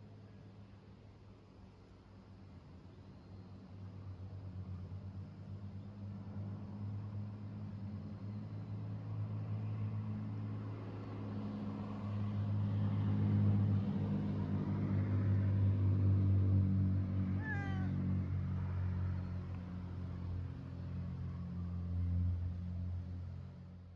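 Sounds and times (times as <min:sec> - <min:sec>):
cat meowing: 0:17.4 - 0:18.0.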